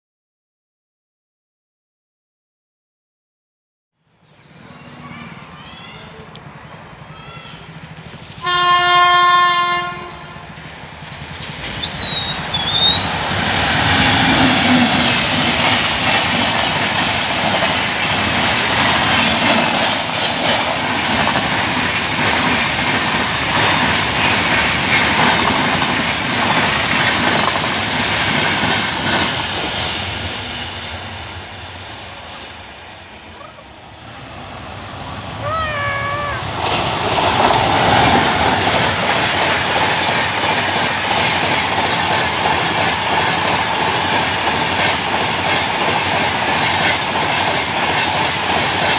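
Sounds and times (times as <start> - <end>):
train passing rumble: 4.1 - 48.9
locomotive horn blast: 8.4 - 10.4
wheel clatter over rail joints: 36.5 - 48.9.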